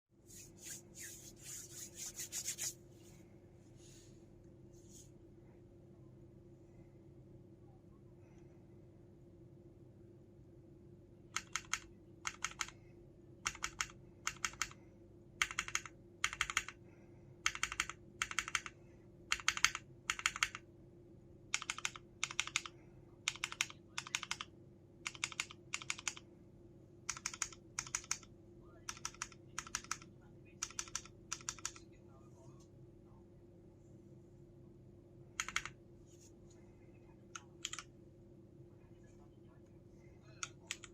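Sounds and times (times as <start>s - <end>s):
mechanical keyboard typing: 11.4s - 12.8s, 13.4s - 14.8s, 15.4s - 16.8s, 17.4s - 18.7s, 19.3s - 20.6s, 21.5s - 22.7s, 23.3s - 26.2s, 27.1s - 28.3s, 28.9s - 31.8s, 35.4s - 35.8s, 37.4s - 37.9s, 40.4s - 40.9s.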